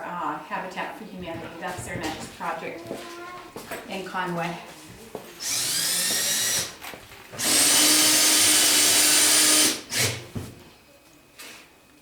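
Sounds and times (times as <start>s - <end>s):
power drill running: 5.4s - 6.7s, 7.4s - 10.2s.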